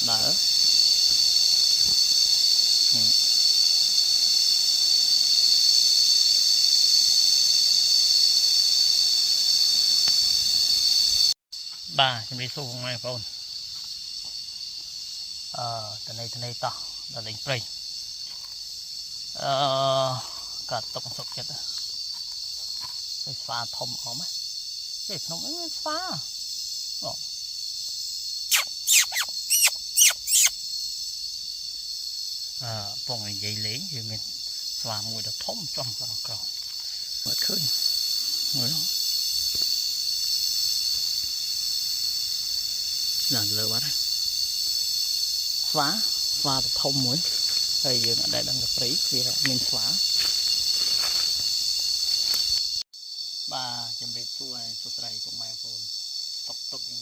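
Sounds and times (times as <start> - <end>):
cicadas droning: 0.0 - 57.0
sharp calls sweeping downward: 28.5 - 30.5.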